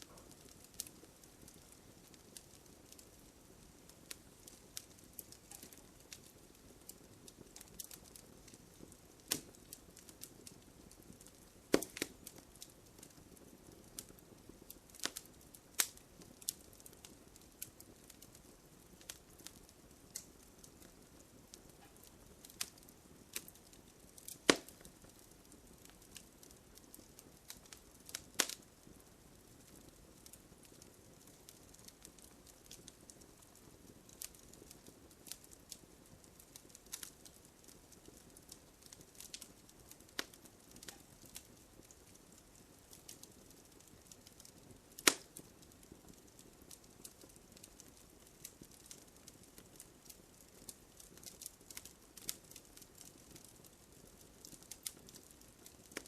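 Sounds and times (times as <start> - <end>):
campfire crackling: 0.0 - 56.0.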